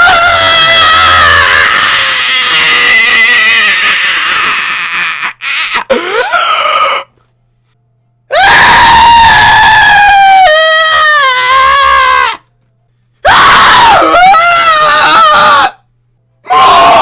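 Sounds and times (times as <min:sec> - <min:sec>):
loud high-pitched screaming: 0:00.0 - 0:05.0, 0:13.2 - 0:15.8.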